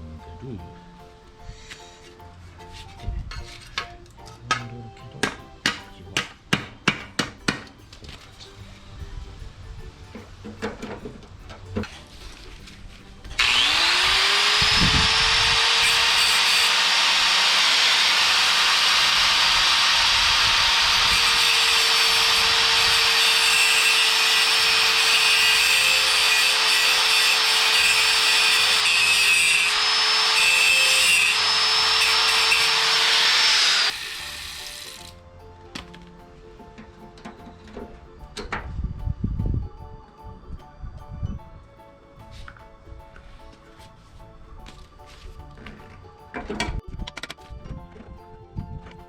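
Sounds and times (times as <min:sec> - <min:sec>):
angle grinder grinding steel: 0:11.8 - 0:35.2.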